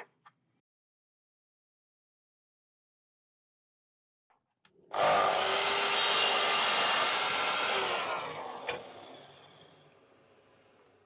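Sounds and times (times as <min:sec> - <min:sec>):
power saw cutting wood: 0:04.9 - 0:11.0
motor winding down whine: 0:05.0 - 0:10.9.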